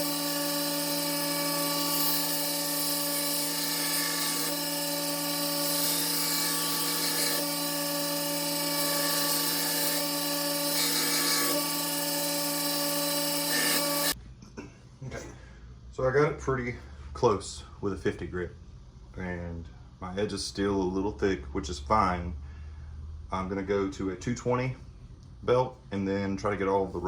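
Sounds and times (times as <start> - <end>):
belt grinder grinding blade: 0.0 - 14.2.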